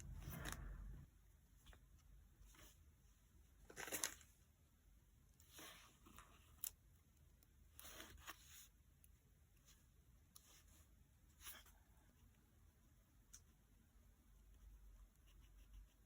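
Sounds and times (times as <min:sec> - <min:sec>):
paper and stickers rustling: 0:00.0 - 0:01.1, 0:03.5 - 0:04.5.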